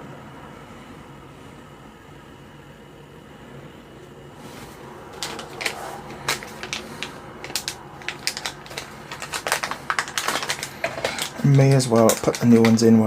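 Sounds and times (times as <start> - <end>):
steady low hum: 0.0 - 13.0
hand tools clicking on workbench: 10.3 - 13.0.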